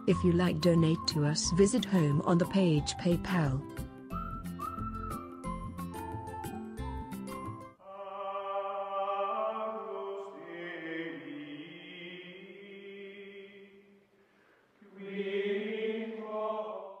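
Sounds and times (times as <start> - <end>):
chant-like vocal tones: 7.8 - 14.0, 14.8 - 17.0.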